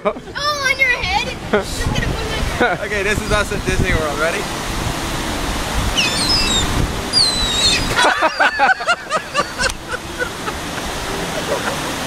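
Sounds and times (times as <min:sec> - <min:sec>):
steady background rush: 0:00.0 - 0:12.0
seagulls calling: 0:05.9 - 0:12.0.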